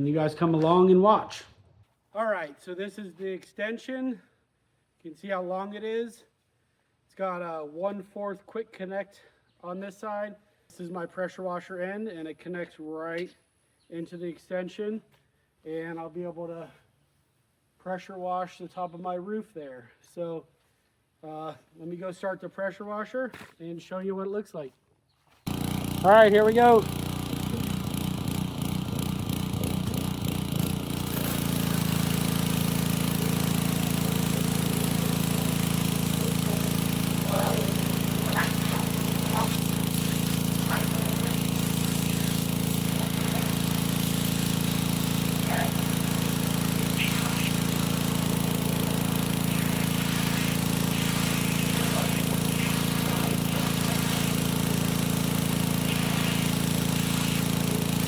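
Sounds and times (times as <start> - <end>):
pressure washer engine running: 25.5 - 58.0.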